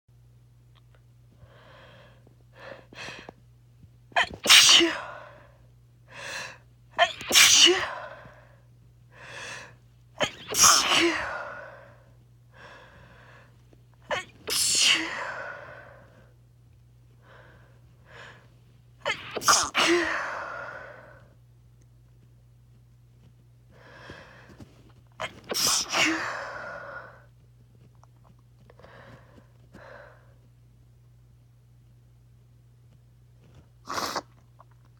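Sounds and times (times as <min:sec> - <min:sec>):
person sneezing: 0:04.2 - 0:05.4, 0:07.0 - 0:08.2, 0:10.2 - 0:11.8, 0:14.1 - 0:15.9, 0:19.0 - 0:21.2, 0:25.2 - 0:27.2, 0:33.8 - 0:34.4.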